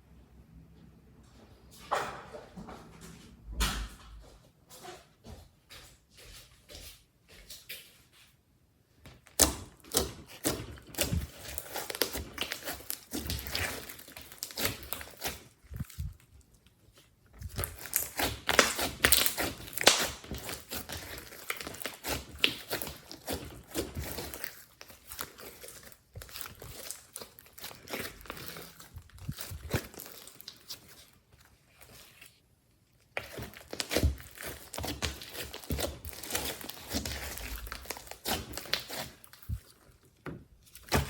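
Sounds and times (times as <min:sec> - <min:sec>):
slime squished by hand: 0:09.2 - 0:32.3, 0:32.9 - 0:41.0.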